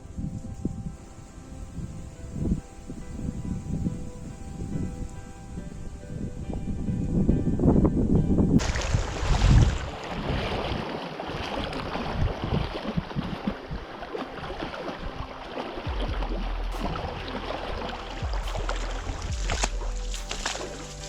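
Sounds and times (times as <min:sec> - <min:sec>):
wind noise on microphone: 0:00.0 - 0:21.0
low rumble: 0:15.8 - 0:21.0.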